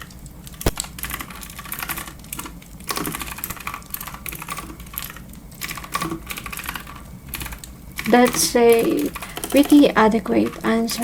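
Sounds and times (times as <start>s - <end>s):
clicky keyboard typing: 0.6s - 11.0s.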